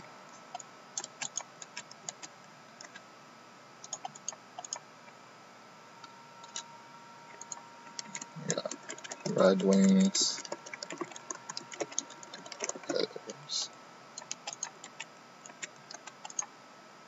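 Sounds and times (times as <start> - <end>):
computer keyboard keystrokes: 1.0 - 3.0, 3.8 - 4.8, 7.4 - 13.1, 14.2 - 16.5.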